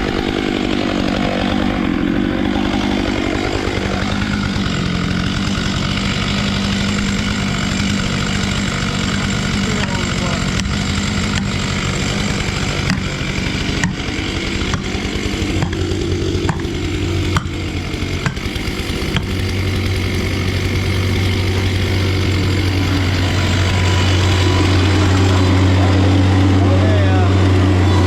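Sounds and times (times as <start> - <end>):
engine idling: 0.0 - 28.0
sharp knocks: 10.6 - 22.9.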